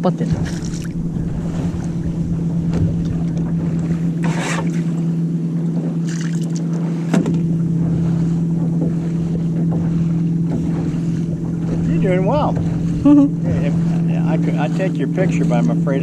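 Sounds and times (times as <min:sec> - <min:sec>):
wind buffeting microphone: 0:00.0 - 0:06.1, 0:07.3 - 0:16.0
steady low hum: 0:00.0 - 0:16.0
water rushing: 0:00.0 - 0:16.0.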